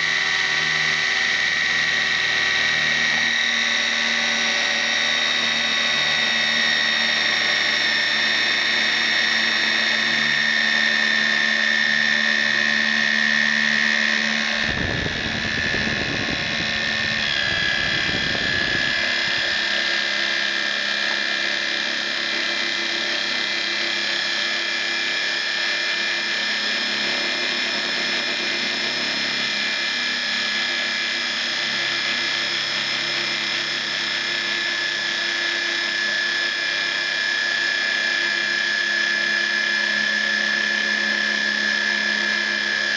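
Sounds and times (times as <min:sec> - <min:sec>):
cnc machine whine: 0:00.0 - 0:42.9
rough low rattling buzz: 0:13.9 - 0:19.9.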